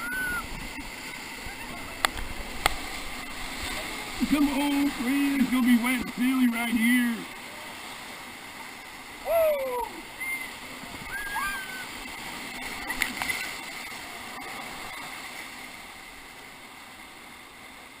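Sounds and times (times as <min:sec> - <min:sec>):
whitewater rapids rushing: 0:00.0 - 0:18.0
people shouting: 0:09.2 - 0:10.0.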